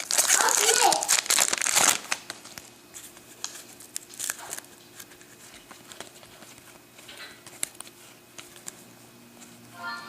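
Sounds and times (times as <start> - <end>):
cards clicking and tapping: 4.9 - 8.8.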